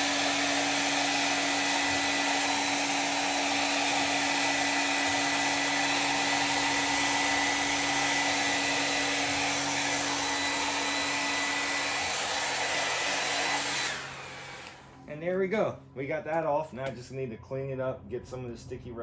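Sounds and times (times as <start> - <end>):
heat gun blowing: 0.0 - 15.0.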